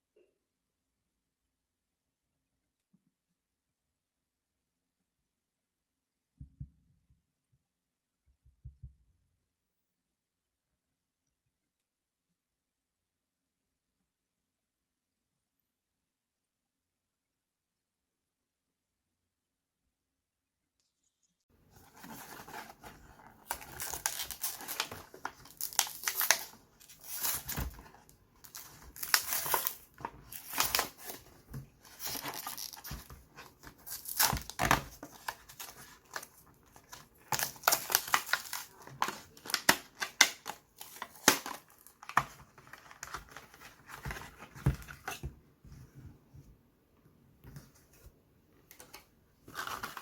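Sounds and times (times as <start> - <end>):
crinkling and tearing: 21.7 - 45.2, 48.7 - 50.0.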